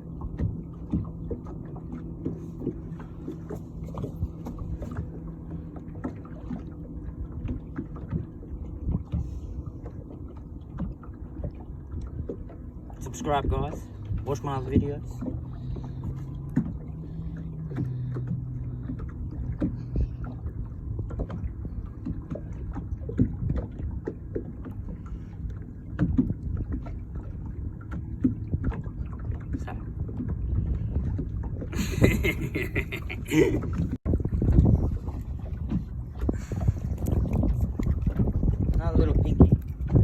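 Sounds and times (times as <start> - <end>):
waves lapping against hull: 0.0 - 40.0.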